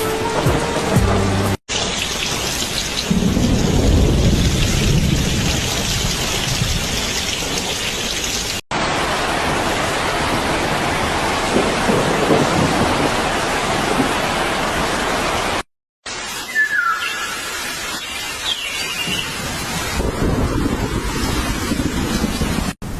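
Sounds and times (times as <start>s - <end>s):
heavy rain: 0.0s - 22.9s
low thunder rumble: 3.0s - 7.7s, 10.2s - 14.2s, 19.1s - 22.9s.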